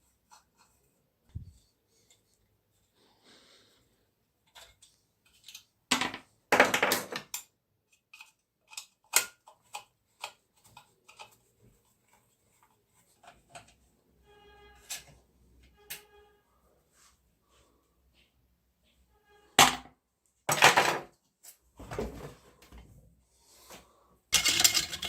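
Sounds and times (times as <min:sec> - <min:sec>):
metal parts and tools clicking: 0:04.4 - 0:05.7, 0:07.0 - 0:11.4, 0:24.4 - 0:25.0.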